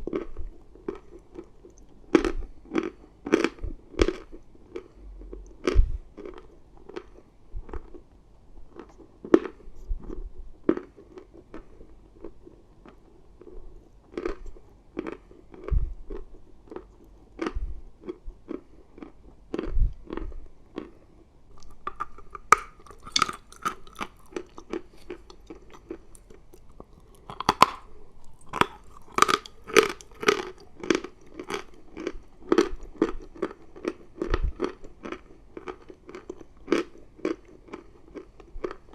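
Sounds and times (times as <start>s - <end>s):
chewing chalk crunches: 21.6s - 38.9s.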